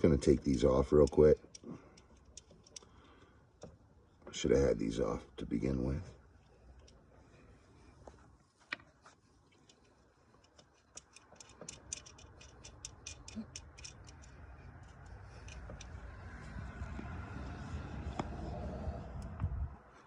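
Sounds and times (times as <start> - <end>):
socket ratchet clicking: 10.5 - 16.0.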